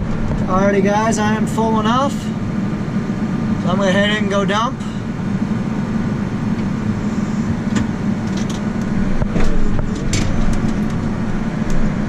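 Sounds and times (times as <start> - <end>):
tractor engine running: 0.0 - 12.0
sharp clicks and rattles: 7.7 - 11.9.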